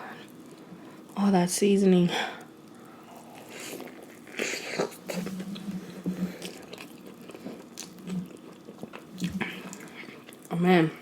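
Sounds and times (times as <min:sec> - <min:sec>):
crunchy chewing: 0:02.8 - 0:10.5
closed-mouth mmm hum: 0:03.0 - 0:06.8.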